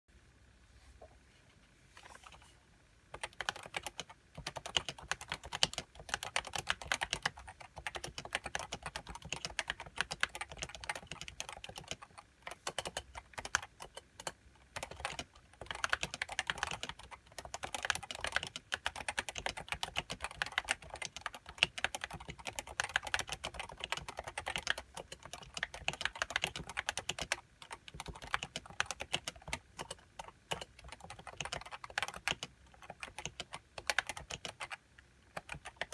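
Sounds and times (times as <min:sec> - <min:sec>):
fast keyboard typing: 0:03.1 - 0:35.9.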